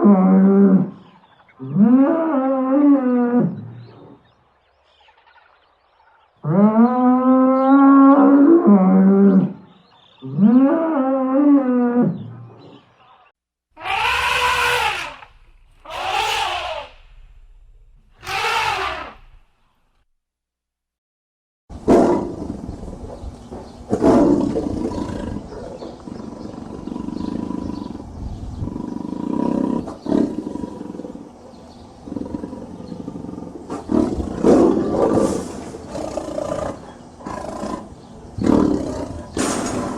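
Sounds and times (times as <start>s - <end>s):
big cat roaring: 13.8s - 19.4s, 32.0s - 39.9s
low rumbling growl: 13.8s - 19.5s.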